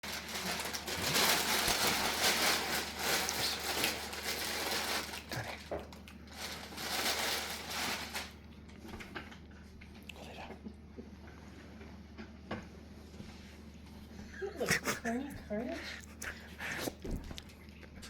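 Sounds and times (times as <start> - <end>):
paper tearing and crumpling: 0.0 - 8.4.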